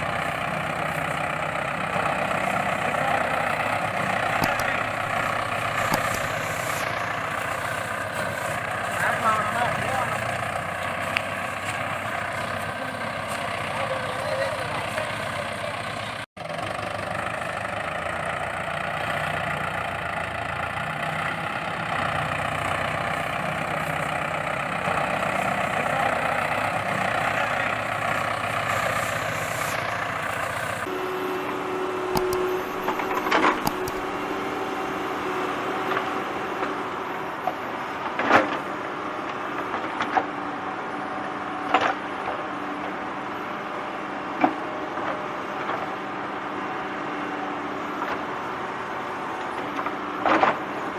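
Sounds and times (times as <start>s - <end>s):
motor running: 30.9s - 34.4s.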